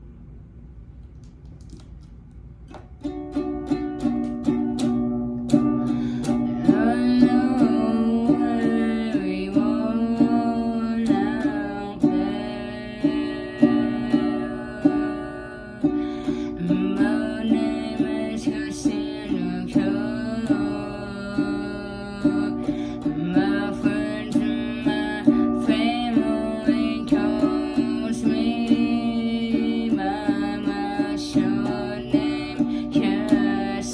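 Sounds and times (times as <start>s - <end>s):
acoustic string instrument strumming: 2.7s - 33.9s
person singing: 3.0s - 33.9s.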